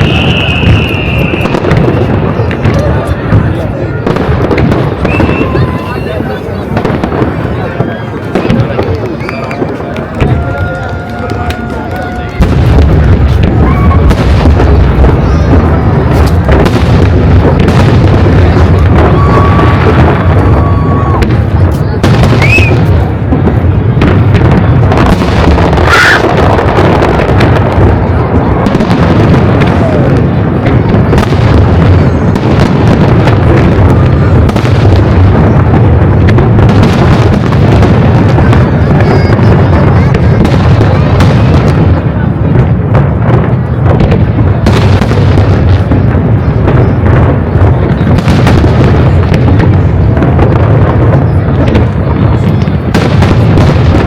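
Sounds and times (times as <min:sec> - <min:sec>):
whistling firework shells: 0:00.0 - 0:06.5, 0:07.6 - 0:12.5, 0:17.4 - 0:23.1
fireworks booms and crackling: 0:00.0 - 0:54.0.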